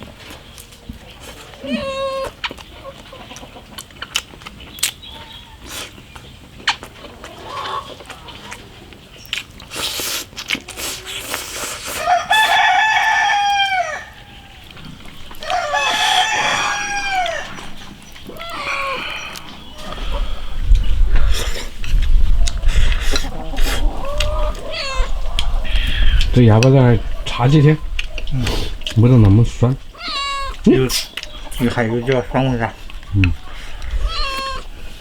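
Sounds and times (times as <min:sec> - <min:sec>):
rooster crowing: 0:12.0 - 0:20.2.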